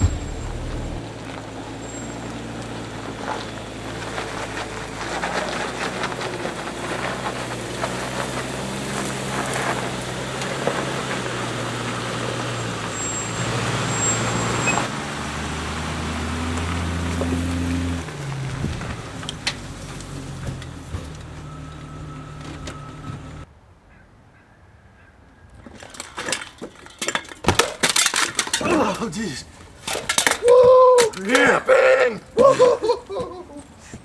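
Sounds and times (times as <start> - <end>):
motorhome engine running: 0.0 - 23.5
vehicle rattles and clicks: 0.0 - 23.5, 25.6 - 34.0.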